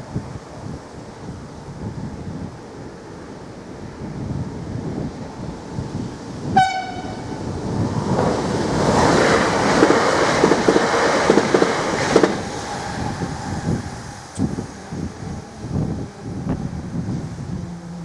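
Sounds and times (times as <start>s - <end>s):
train passing with rush: 0.0s - 18.0s
train horn blast: 6.4s - 7.5s
train wheels clacking on rails: 6.4s - 14.6s.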